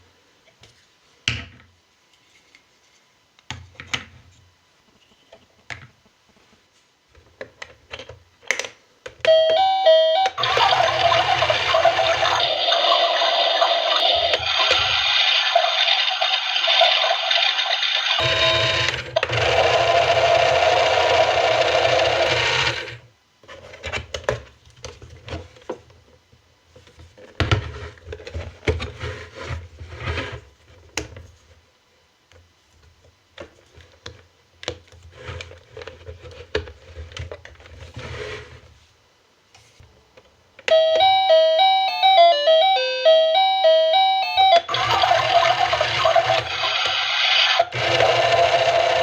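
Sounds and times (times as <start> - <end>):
toy machine humming: 9.3 - 23.0, 40.7 - 49.0
electronic beeping tune: 40.7 - 46.4.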